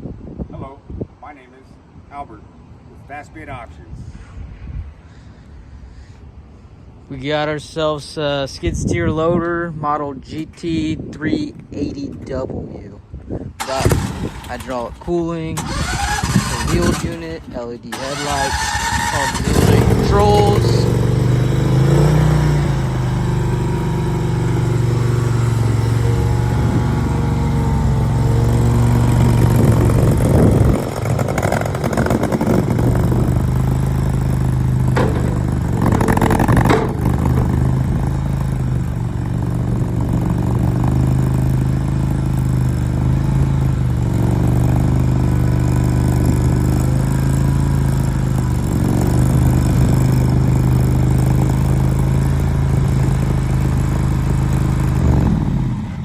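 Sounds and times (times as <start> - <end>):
engine running steadily: 13.6 - 56.0
clatter: 29.3 - 38.5.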